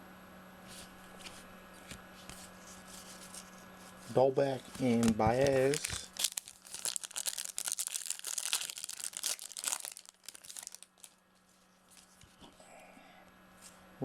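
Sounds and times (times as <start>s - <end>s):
cards being handled: 0.7s - 11.2s, 11.9s - 12.6s
foil wrapper crinkling: 2.2s - 11.2s, 11.8s - 12.4s.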